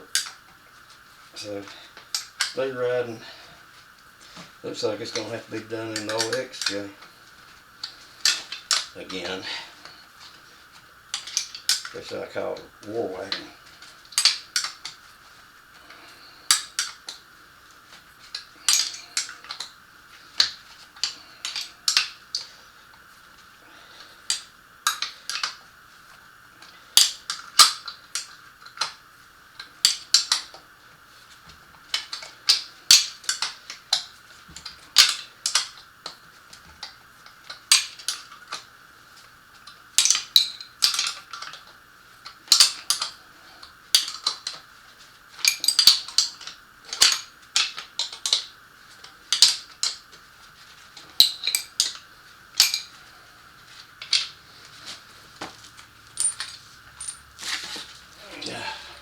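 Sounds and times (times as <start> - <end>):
faint hum: 0.0 - 27.4, 51.1 - 59.0
metallic clinks of hand tools: 52.6 - 53.0, 56.1 - 57.8.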